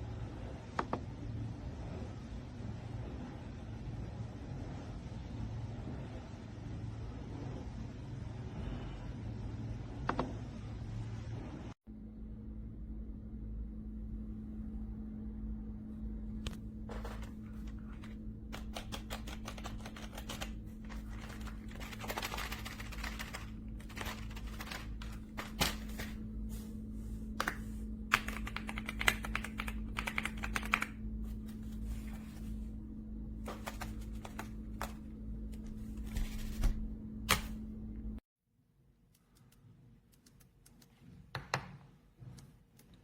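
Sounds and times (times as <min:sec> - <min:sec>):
low hum: 0:00.0 - 0:38.2
mechanical keyboard typing: 0:18.5 - 0:25.7, 0:28.1 - 0:31.0.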